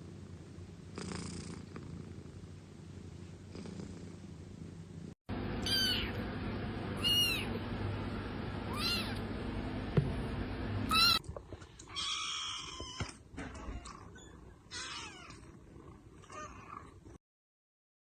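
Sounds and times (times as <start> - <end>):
cat purring: 0.0 - 4.4, 13.5 - 17.2
low steady hum: 0.0 - 17.2
cat mewing: 5.6 - 6.2, 7.0 - 7.6, 8.7 - 9.2, 10.9 - 11.2, 11.9 - 14.1, 14.7 - 15.4.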